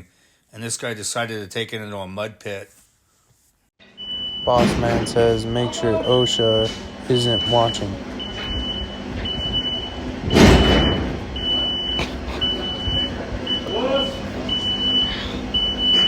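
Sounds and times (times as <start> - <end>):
construction machine running: 3.8 - 16.0
reversing alarm beeping: 3.8 - 16.0.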